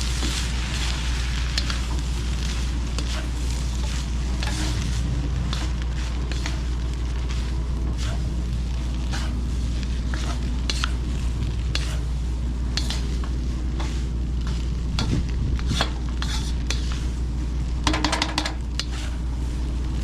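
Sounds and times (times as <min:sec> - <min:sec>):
rice sizzling in a hot pan: 0:00.0 - 0:20.0
steady low hum: 0:00.0 - 0:20.0
metal utensil scraping a pan: 0:13.8 - 0:17.0
metal clattering on a pan: 0:17.8 - 0:18.6.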